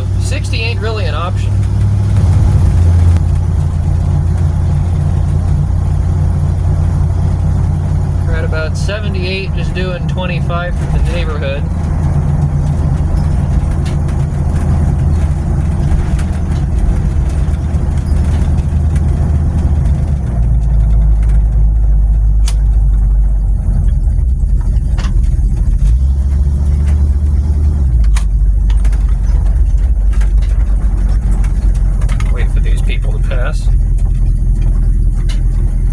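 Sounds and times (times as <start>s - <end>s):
engine and drivetrain rumble: 0.0s - 35.9s
road noise: 0.0s - 35.9s
sharp clicks: 22.4s - 22.7s.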